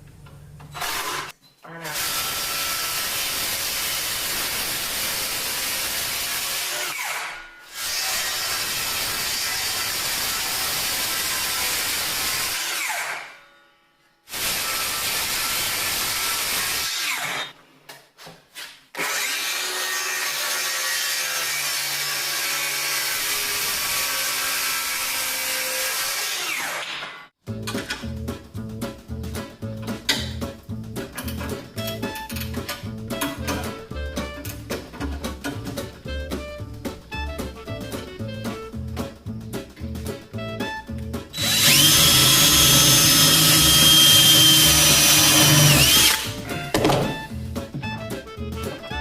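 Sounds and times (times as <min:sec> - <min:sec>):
power saw cutting boards: 0:00.8 - 0:17.6, 0:18.6 - 0:27.3, 0:41.3 - 0:47.3.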